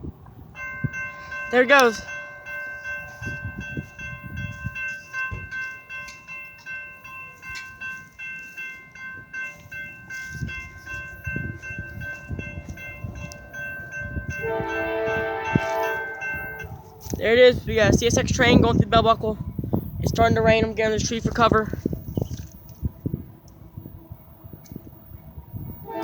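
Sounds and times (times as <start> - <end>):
freight train approaching: 0.0 - 26.0
wind buffeting microphone: 0.0 - 26.0
railroad crossing bell ringing: 0.4 - 21.9, 22.9 - 26.0.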